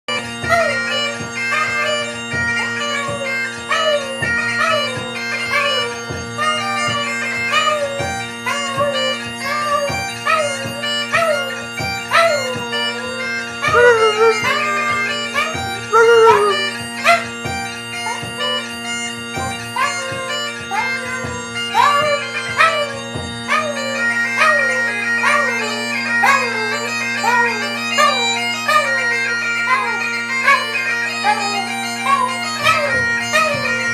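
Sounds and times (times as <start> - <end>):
bagpipes playing: 0.1 - 33.9
drum beats: 5.8 - 18.6, 32.6 - 33.9
dog howling: 9.6 - 17.3, 21.8 - 33.6.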